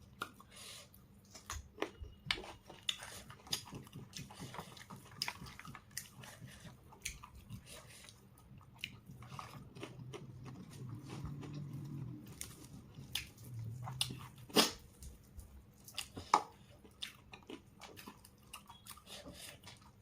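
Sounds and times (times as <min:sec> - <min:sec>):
chewing and biting fried chicken: 0:00.0 - 0:20.0
low hum: 0:09.2 - 0:14.5.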